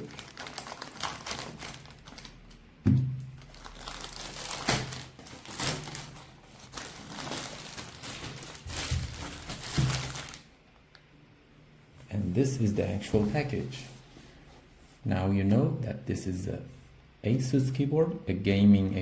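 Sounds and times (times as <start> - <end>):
plastic wrap crinkling: 0.0 - 10.6
box thumping: 2.9 - 3.3.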